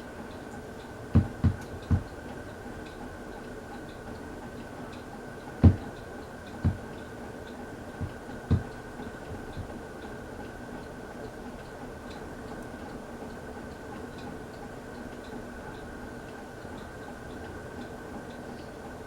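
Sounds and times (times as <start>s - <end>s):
ceiling fan humming: 0.0s - 19.0s
low knocks: 1.2s - 2.2s, 5.6s - 6.0s, 6.6s - 6.9s, 8.0s - 8.8s.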